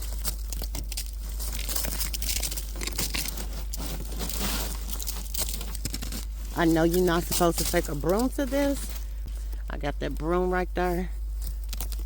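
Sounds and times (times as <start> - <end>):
crunching of icy snow: 0.0 - 9.3.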